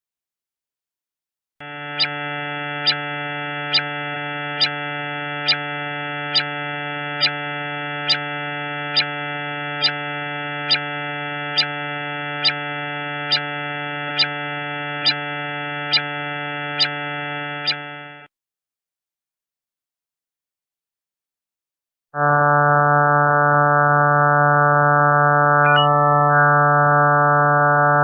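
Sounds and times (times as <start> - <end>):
electronic drone: 1.6 - 18.2, 22.2 - 28.0.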